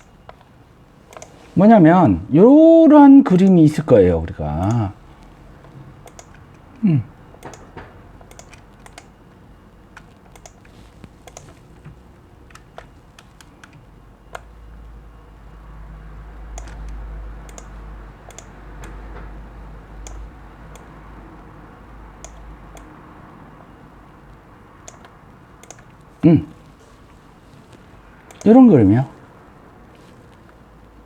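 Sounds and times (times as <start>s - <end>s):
computer keyboard typing: 0.0s - 1.6s, 4.6s - 14.6s, 16.5s - 21.5s, 22.2s - 23.0s, 24.3s - 27.0s, 27.7s - 29.4s.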